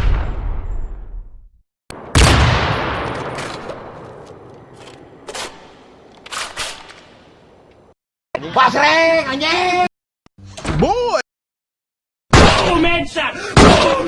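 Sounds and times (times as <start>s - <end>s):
gunshot with echo: 2.0s - 4.1s.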